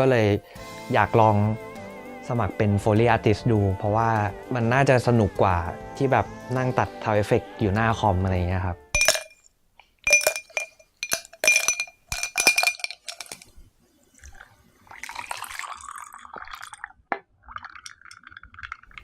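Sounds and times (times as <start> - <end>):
handling noise: 9.0 - 9.5, 10.1 - 13.6
glass clinking: 9.0 - 13.6, 17.7 - 18.3.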